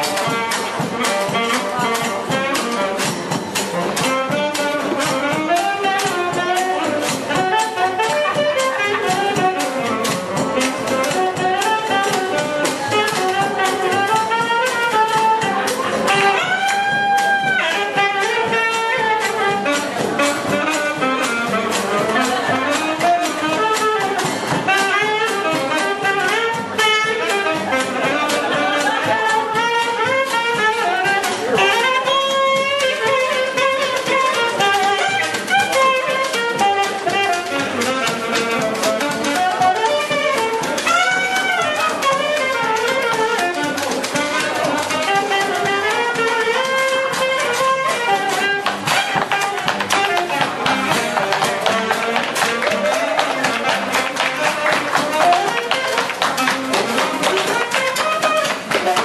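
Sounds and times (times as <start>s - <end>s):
jazz band with brass horns: 0.0s - 59.0s.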